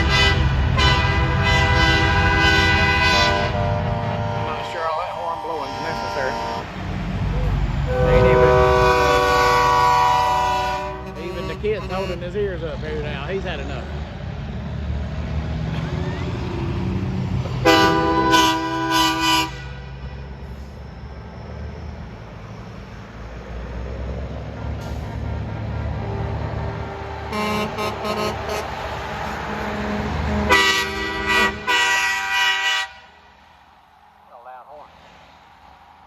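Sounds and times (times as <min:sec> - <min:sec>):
truck horn blasts: 0:00.0 - 0:07.1, 0:07.8 - 0:13.7, 0:17.4 - 0:20.4, 0:24.8 - 0:33.3
truck engines passing: 0:00.0 - 0:36.0.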